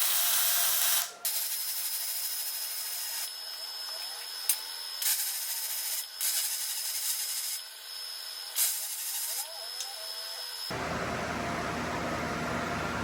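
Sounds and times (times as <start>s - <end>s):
welding arc crackling hiss: 0.0s - 7.6s, 8.6s - 10.0s.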